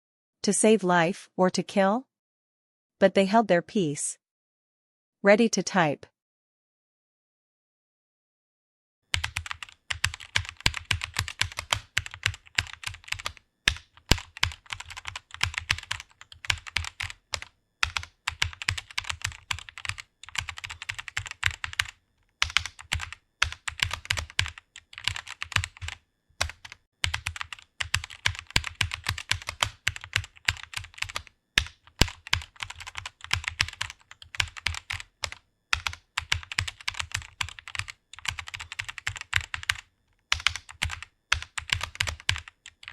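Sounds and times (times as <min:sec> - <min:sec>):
fast keyboard typing: 0:09.1 - 0:42.9.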